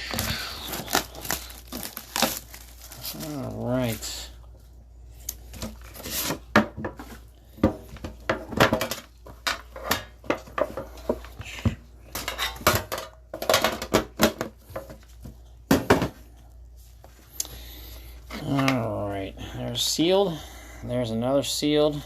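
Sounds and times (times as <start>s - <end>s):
card packaging clicking and clattering: 0.0s - 3.2s.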